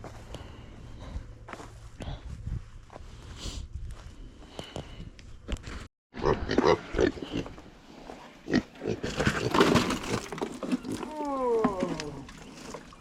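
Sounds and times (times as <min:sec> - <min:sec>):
animal snorts and rooting: 0:06.2 - 0:11.2
animals crunching and chewing: 0:06.2 - 0:13.0.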